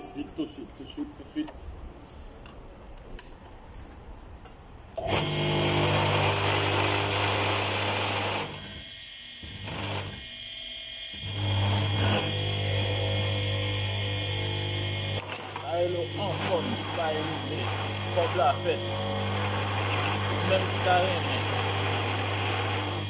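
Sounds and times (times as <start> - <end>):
concrete mixer motor humming: 5.0 - 23.0.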